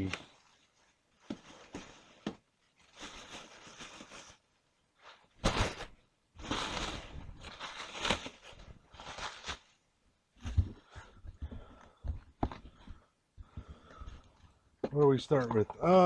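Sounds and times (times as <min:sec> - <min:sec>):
packaging rustling and crinkling: 0:00.0 - 0:11.2.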